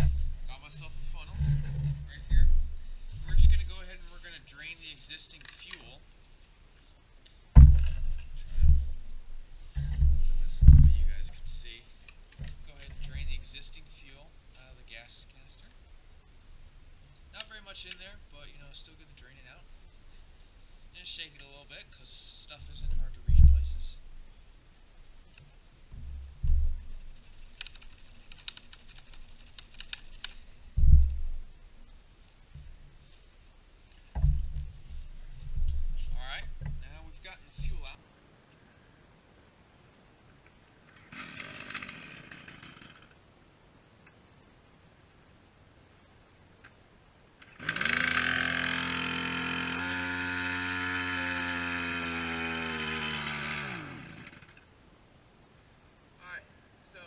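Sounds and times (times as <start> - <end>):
low thumps: 0.0 - 4.2, 7.5 - 11.7, 22.5 - 24.3, 25.8 - 27.5, 30.2 - 33.0, 34.1 - 38.0
light clicks and rattles: 0.0 - 6.0, 7.2 - 15.8, 25.3 - 33.3
chainsaw engine running: 41.1 - 43.2, 47.5 - 54.7.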